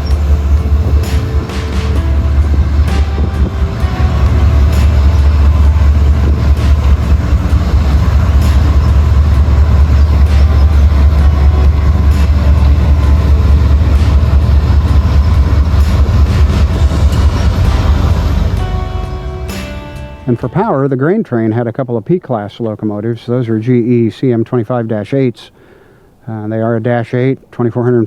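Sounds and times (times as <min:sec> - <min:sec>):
wheels clicking over rail joints: 0:00.0 - 0:18.7
freight train rumbling past: 0:00.0 - 0:20.8.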